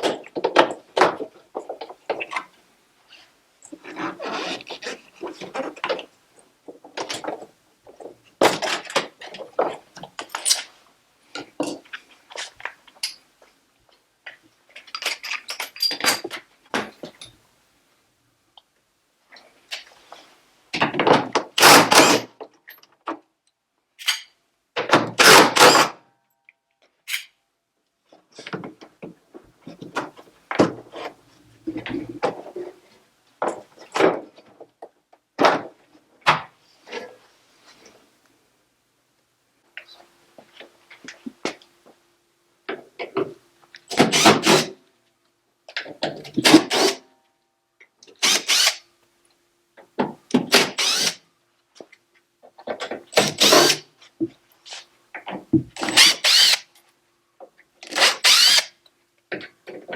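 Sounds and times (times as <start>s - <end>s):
parts and tools clattering: 14.7s - 17.4s.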